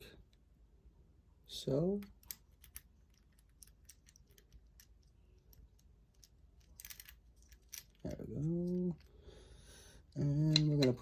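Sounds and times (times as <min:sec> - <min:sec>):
small metal clicks and taps: 0:10.4 - 0:11.0.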